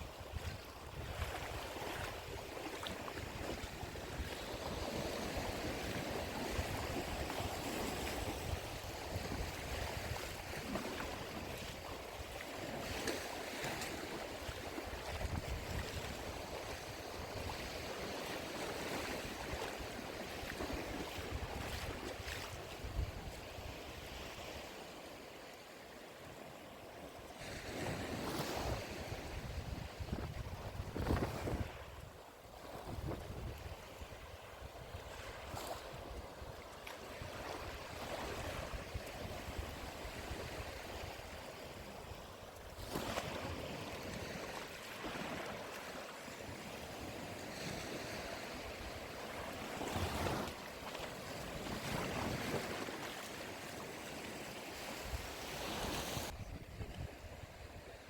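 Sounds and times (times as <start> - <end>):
wind buffeting microphone: 0.0 - 2.4, 14.8 - 24.6, 27.9 - 36.6, 54.9 - 58.0
gentle surf on shore: 0.0 - 58.0.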